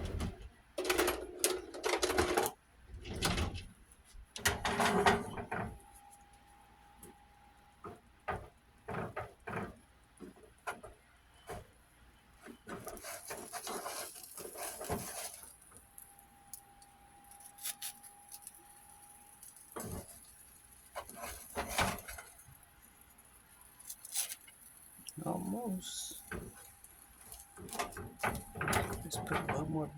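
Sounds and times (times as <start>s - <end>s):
utensils scraping: 12.6s - 15.6s.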